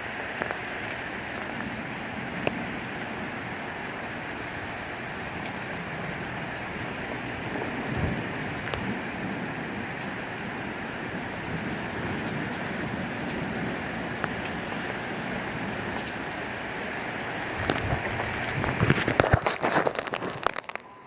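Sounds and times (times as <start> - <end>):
heavy rain falling: 0.0 - 21.0
crackles and knocks: 4.3 - 16.4, 17.4 - 20.9.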